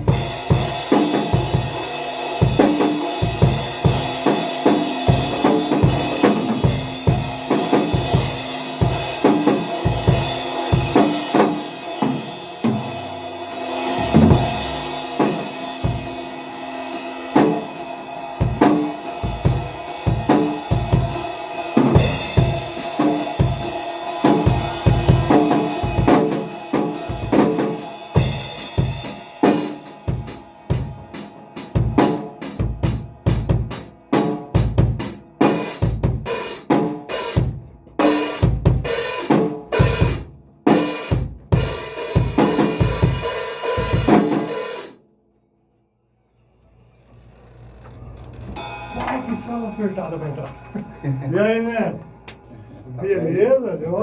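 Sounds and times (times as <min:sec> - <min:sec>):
drum kit playing: 0:00.0 - 0:45.0, 0:47.6 - 0:52.8
sustained instrument tones: 0:46.2 - 0:53.5.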